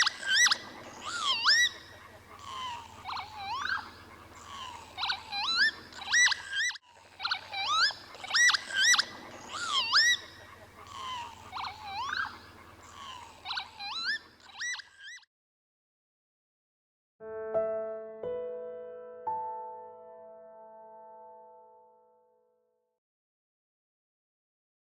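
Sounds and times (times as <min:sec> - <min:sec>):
faint low hum: 0:00.0 - 0:14.5
lapwing calling: 0:00.0 - 0:15.2.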